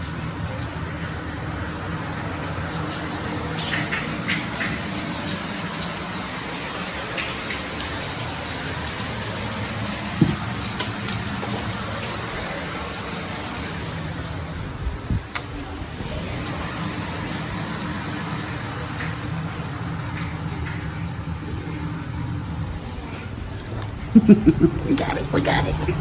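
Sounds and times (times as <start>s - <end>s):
shower water running: 0.0s - 26.0s
knocks: 10.2s - 10.6s.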